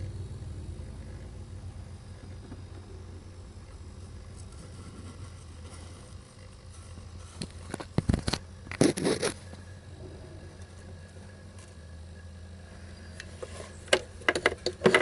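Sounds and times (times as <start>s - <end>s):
steady low hum: 0.0s - 15.0s
scraping crinkling and clicking: 4.3s - 9.7s, 13.2s - 15.0s.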